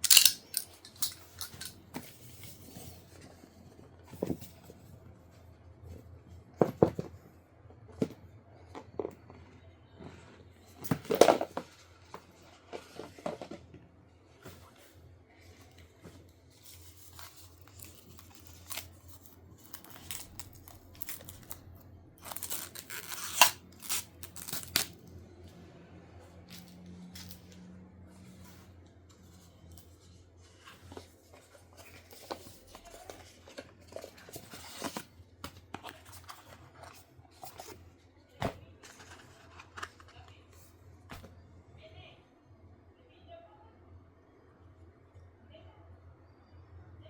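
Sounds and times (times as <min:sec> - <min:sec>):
packaging rustling and handling: 0:00.0 - 0:07.2, 0:15.5 - 0:25.1, 0:29.3 - 0:41.3
packaging tearing or snipping: 0:17.6 - 0:25.0.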